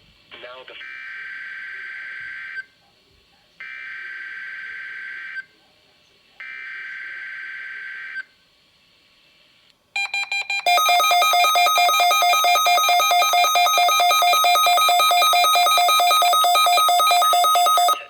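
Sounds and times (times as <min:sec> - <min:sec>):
rapidly pulsing two-tone beeping: 0:10.0 - 0:18.0
short beeps: 0:10.0 - 0:18.0
weather radio alert alarm: 0:10.0 - 0:18.0.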